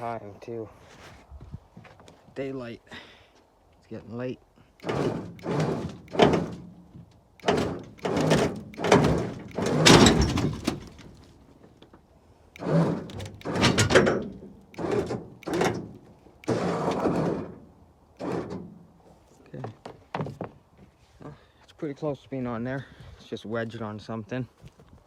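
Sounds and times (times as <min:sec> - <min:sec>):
metal clanking and scraping: 0:04.8 - 0:11.8, 0:12.6 - 0:19.0.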